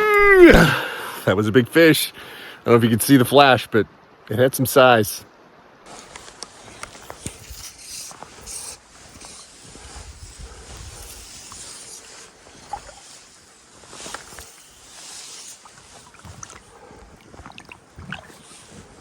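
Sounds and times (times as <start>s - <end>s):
wind rumble on microphone: 9.1s - 13.0s
stream water rushing: 11.4s - 19.0s.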